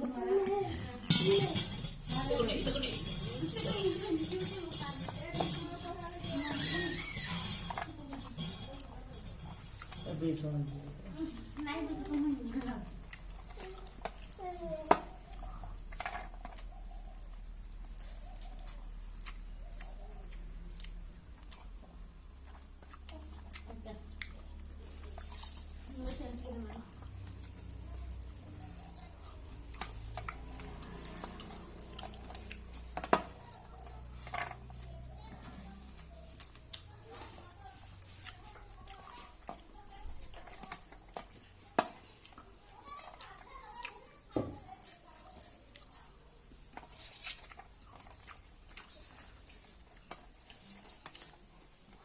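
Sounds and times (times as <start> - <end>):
wet chewing sounds: 11.0 - 52.0.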